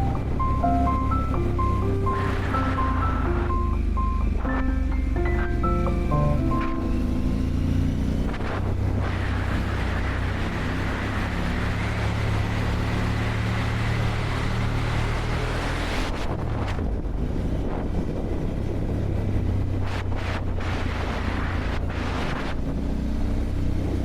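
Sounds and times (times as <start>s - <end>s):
music track: 0.0s - 7.6s
motorcycle engine humming: 0.0s - 16.2s
wind rush on microphone: 15.9s - 22.9s.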